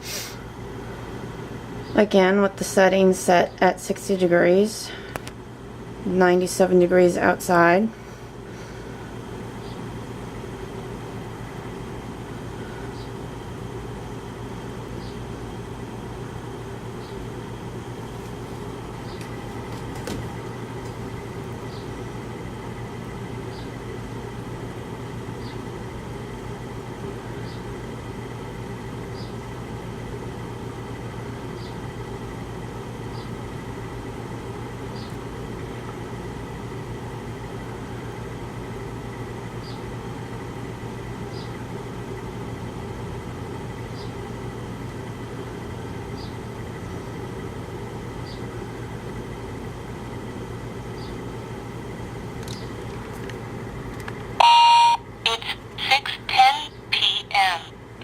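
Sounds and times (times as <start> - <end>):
air conditioner fan blowing: 0.0 - 58.0.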